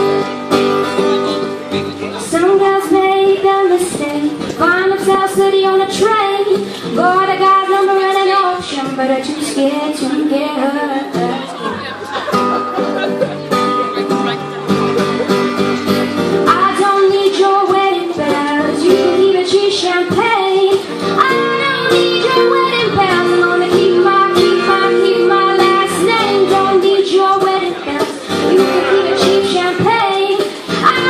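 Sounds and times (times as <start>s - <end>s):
strummed guitar: 0.0s - 31.0s
woman singing: 2.2s - 11.6s, 16.4s - 31.0s.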